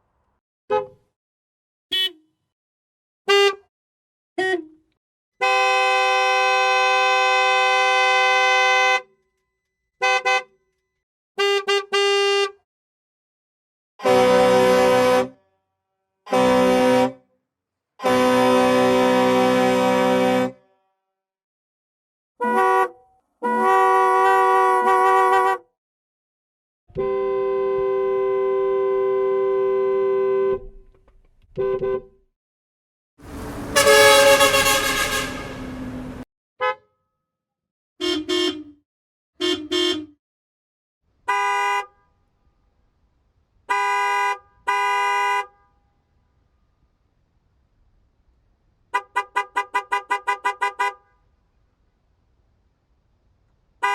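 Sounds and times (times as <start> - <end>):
car horns honking: 0.7 - 1.1, 1.9 - 2.2, 3.3 - 3.6, 5.4 - 9.2, 10.0 - 10.7, 11.4 - 12.6, 14.0 - 15.4, 16.3 - 17.2, 18.0 - 20.6, 22.4 - 25.6, 26.9 - 30.7, 31.6 - 32.1, 33.4 - 36.8, 38.0 - 38.8, 39.4 - 40.2, 41.3 - 42.0, 43.7 - 45.6, 48.9 - 51.1.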